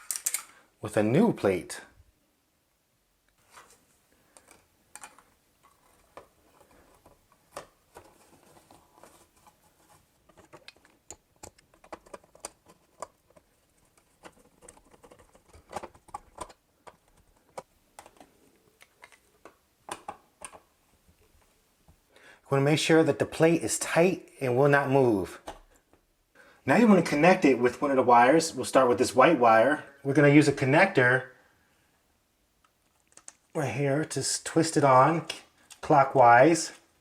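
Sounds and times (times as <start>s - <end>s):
clicks and taps: 10.3s - 20.6s.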